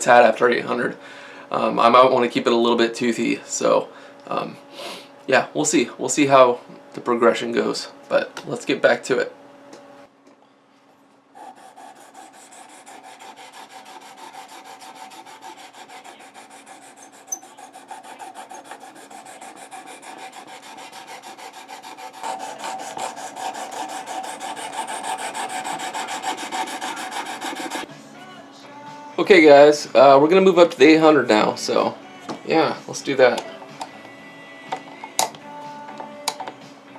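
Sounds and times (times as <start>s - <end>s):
sharpening stone scraping knife blade: 16.8s - 21.0s.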